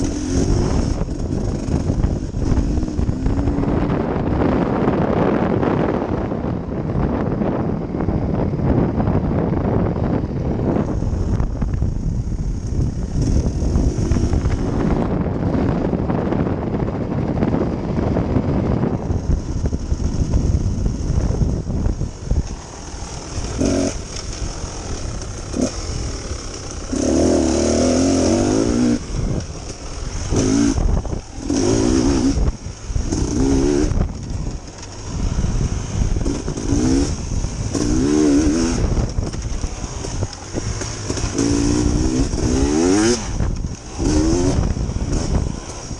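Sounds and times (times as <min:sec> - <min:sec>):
dirt bike engine revving: 0:00.0 - 0:06.2, 0:12.0 - 0:15.3, 0:19.0 - 0:45.9.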